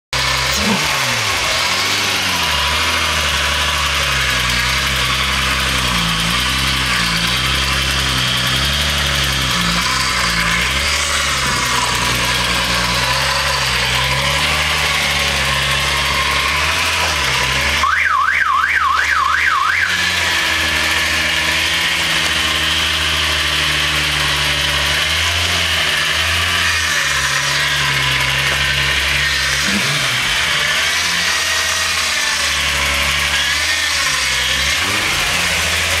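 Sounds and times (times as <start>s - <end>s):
car engine clattering: 0.1s - 36.0s.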